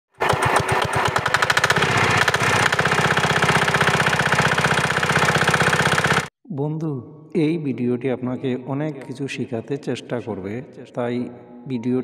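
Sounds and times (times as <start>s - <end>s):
diesel engine knocking: 0.2s - 6.3s.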